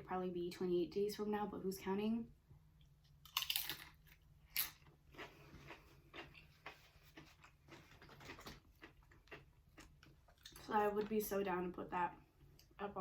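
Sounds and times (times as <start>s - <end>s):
person chewing: 3.1s - 10.6s.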